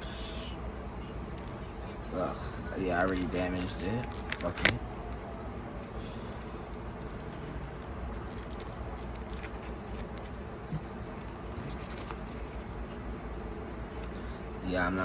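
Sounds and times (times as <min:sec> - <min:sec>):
low background hum: 0:00.0 - 0:15.0
cardboard box rustling: 0:07.1 - 0:12.6.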